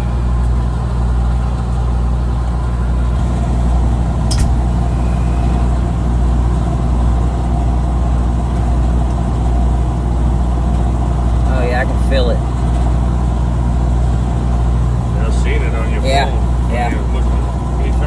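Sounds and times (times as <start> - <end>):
diesel machinery droning: 0.0 - 18.0
short click: 4.3 - 4.6.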